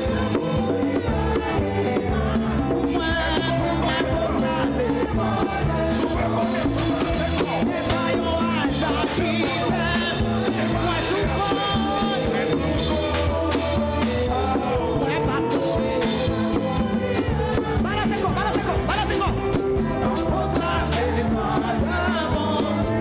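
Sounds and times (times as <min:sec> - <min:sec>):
drums upbeat rhythm: 0:00.0 - 0:23.0
live church band music: 0:00.0 - 0:23.0
people singing: 0:00.0 - 0:23.0.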